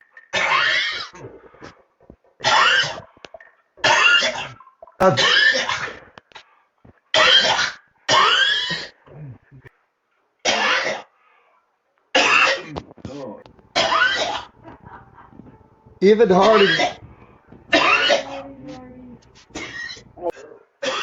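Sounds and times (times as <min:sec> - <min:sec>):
person coughing: 0:13.7 - 0:15.6, 0:16.4 - 0:17.1, 0:17.7 - 0:21.0.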